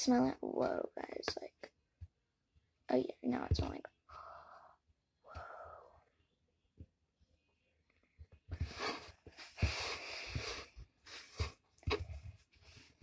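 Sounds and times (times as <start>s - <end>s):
person sniffing and breathing: 8.7s - 11.6s.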